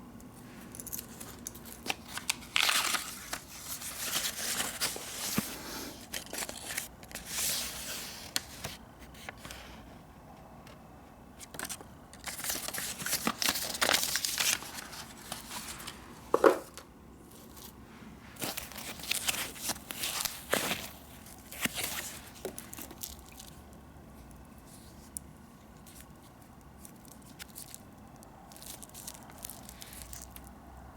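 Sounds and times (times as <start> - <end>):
wrapping crinkling and tearing: 0.8 - 9.4, 11.6 - 16.0, 18.4 - 23.7, 25.8 - 30.6.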